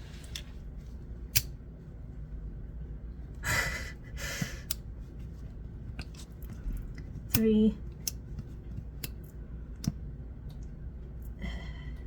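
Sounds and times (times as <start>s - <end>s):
breathy sighs: 11.4s - 12.0s.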